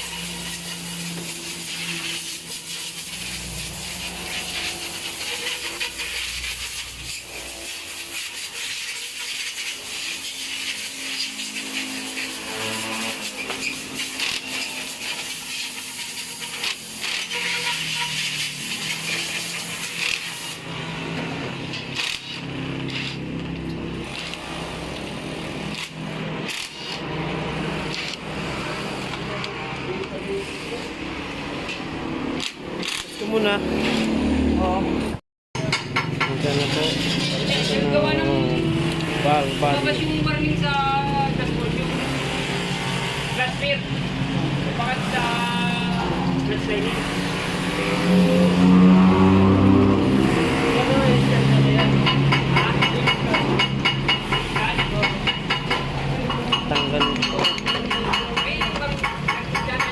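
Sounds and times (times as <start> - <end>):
short hissing bursts: 0.0 - 12.3.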